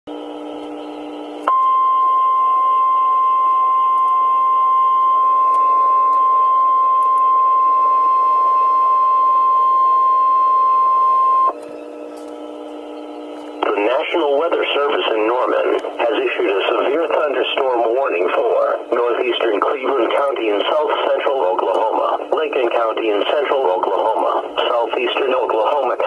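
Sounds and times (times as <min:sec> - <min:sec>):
steady alarm tone: 0:01.4 - 0:13.4
radio hiss and hum: 0:04.9 - 0:26.0.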